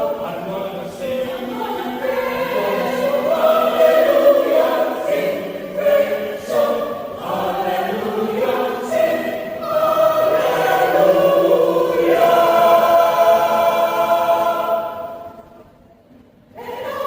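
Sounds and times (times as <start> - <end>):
choir singing in parts: 0.0 - 15.6, 16.6 - 17.0.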